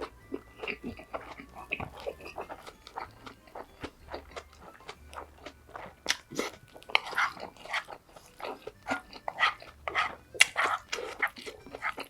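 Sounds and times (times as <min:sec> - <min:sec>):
person chewing and biting: 0:00.0 - 0:12.0.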